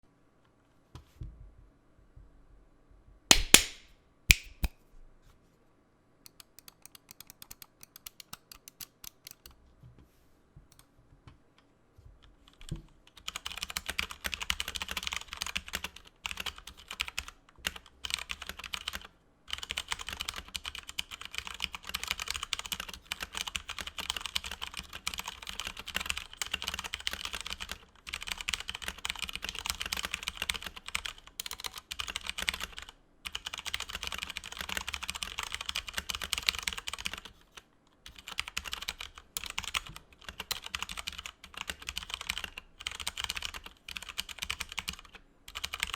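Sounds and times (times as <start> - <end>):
mechanical keyboard typing: 6.3 - 9.5, 12.5 - 37.4, 38.1 - 45.9.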